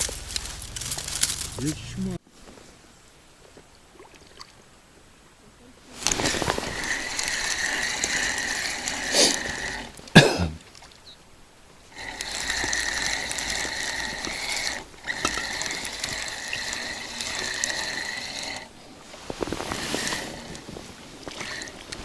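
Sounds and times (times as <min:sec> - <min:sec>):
fishing reel gears whirring: 0:05.9 - 0:10.2, 0:11.6 - 0:22.0.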